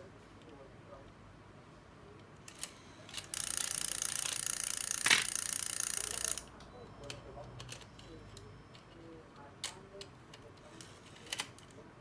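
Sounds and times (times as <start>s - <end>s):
small mechanism clicks: 2.4s - 6.5s.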